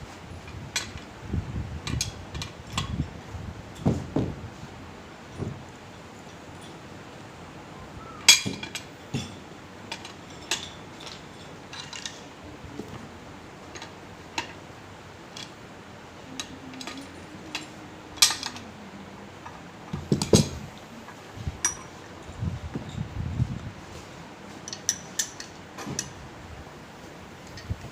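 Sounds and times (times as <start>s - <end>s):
tools clinking on metal: 16.4s - 18.7s, 21.6s - 22.0s.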